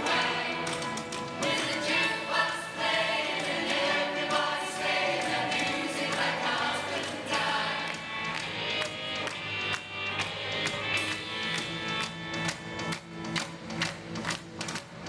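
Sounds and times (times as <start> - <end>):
choir singing pop song: 0.0 - 8.2
instrumental backing with beat: 0.0 - 15.0.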